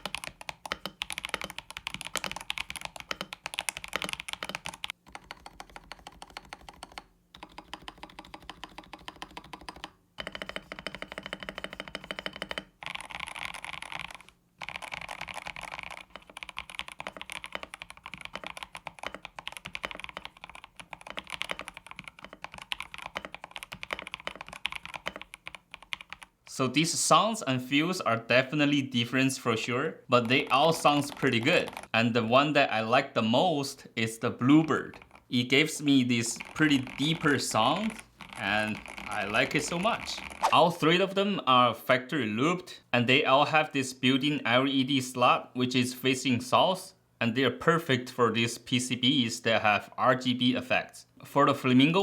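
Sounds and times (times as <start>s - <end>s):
typing on mechanical keyboard: 0.0s - 26.4s, 30.2s - 31.9s, 34.6s - 35.4s, 36.3s - 40.5s.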